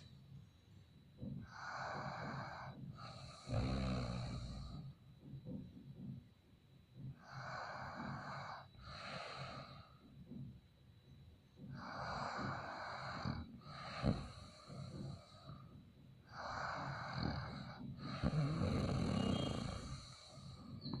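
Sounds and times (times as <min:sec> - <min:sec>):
man snoring: 0:01.4 - 0:04.9, 0:07.2 - 0:09.9, 0:11.7 - 0:15.6, 0:16.3 - 0:20.7.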